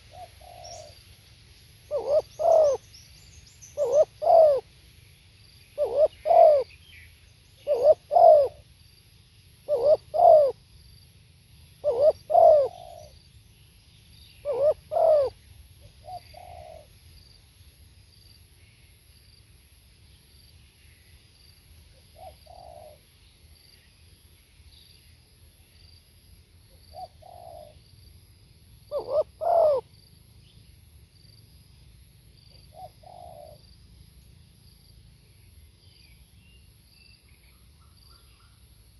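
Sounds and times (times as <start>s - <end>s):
dove cooing: 0.0s - 1.0s, 1.9s - 2.8s, 3.8s - 4.7s, 5.8s - 6.7s, 7.6s - 8.6s, 9.6s - 10.6s, 11.8s - 13.2s, 14.4s - 15.4s, 16.0s - 16.9s, 22.2s - 23.0s, 26.9s - 27.8s, 28.9s - 29.9s, 32.6s - 33.6s.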